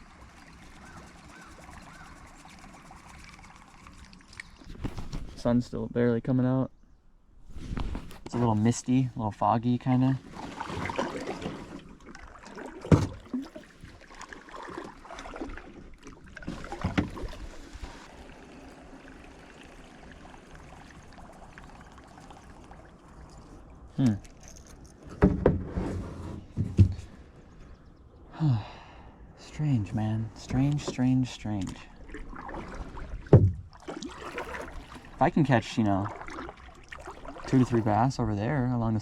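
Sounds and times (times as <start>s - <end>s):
water noise: 0.0s - 6.6s, 7.4s - 39.0s
knocks against kayak hull: 12.9s - 13.4s, 33.2s - 33.7s.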